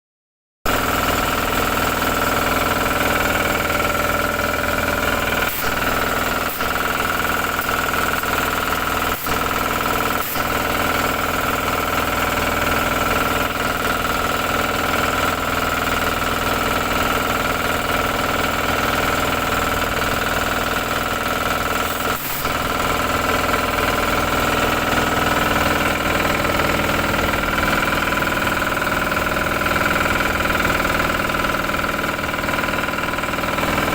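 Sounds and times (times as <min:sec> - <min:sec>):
engine running steadily: 0:00.7 - 0:33.9
high steady whine: 0:03.4 - 0:11.8.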